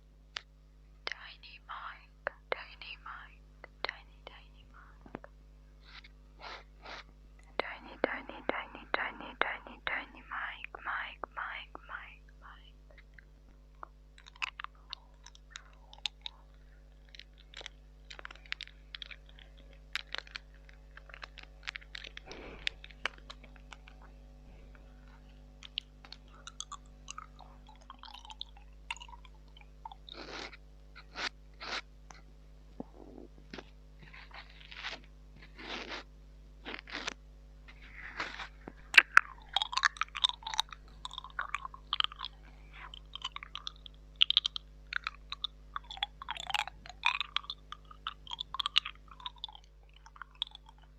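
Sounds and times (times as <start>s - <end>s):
wet mouth clicks and smacks: 12.9s - 24.1s, 25.6s - 30.1s, 38.9s - 50.9s
chewing-like crunches: 12.9s - 24.2s, 25.0s - 32.2s, 32.8s - 37.2s, 37.8s - 50.9s.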